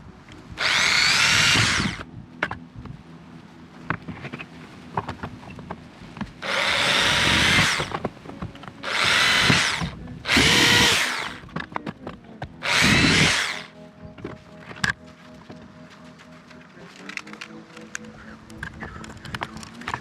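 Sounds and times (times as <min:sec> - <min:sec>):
power drill drilling plastic: 0:00.6 - 0:02.0, 0:06.4 - 0:08.0, 0:08.8 - 0:11.5, 0:12.6 - 0:13.7.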